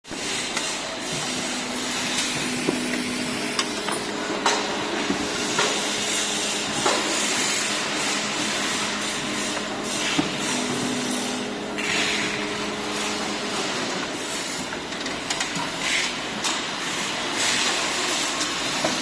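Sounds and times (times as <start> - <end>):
machinery hiss and hum: 0.1 - 19.0
tools and parts clanking: 2.3 - 4.7.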